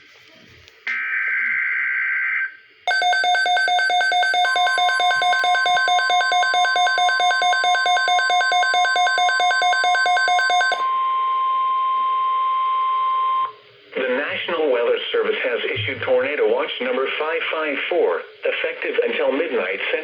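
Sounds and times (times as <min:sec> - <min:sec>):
rapid alert alarm beeping: 0:02.9 - 0:10.9
steady warning alarm tone: 0:02.9 - 0:11.2.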